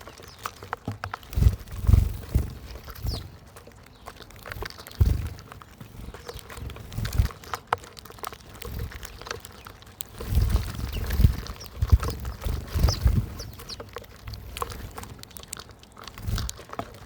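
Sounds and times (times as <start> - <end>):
birds pecking and hopping: 0.0 - 17.0.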